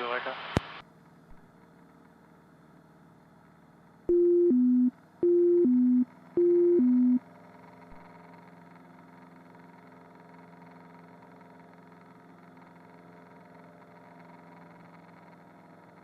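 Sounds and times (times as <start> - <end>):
faint steady hum: 0.0 - 11.2
two-tone electronic alert: 4.1 - 7.2.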